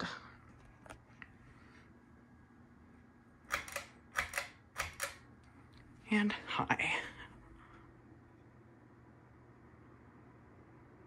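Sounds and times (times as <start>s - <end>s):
ceiling fan humming: 0.0s - 11.0s
pull-chain switch clicks: 3.5s - 5.2s.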